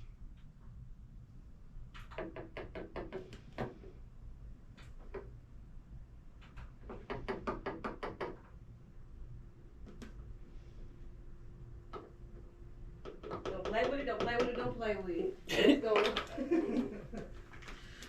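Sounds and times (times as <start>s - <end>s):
knocking: 13.0s - 14.9s.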